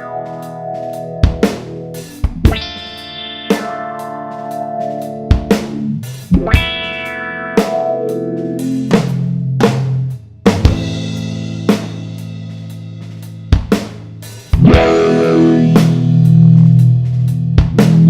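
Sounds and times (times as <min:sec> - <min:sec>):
electric guitar chords with filter: 0:00.0 - 0:18.0
drum hits: 0:01.2 - 0:04.0, 0:05.0 - 0:07.1, 0:07.7 - 0:16.8.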